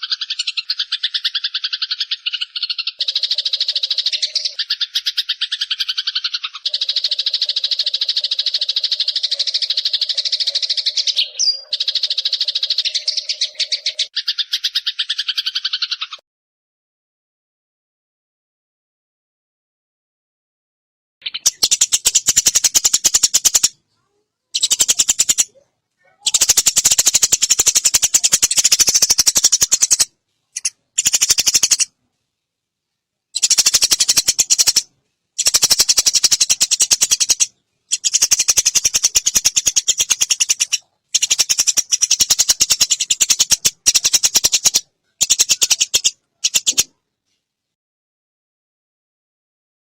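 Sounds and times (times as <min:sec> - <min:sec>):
sparrow chattering rattles: 0:00.0 - 0:16.2, 0:21.2 - 0:23.8, 0:24.6 - 0:31.9, 0:33.3 - 0:46.9.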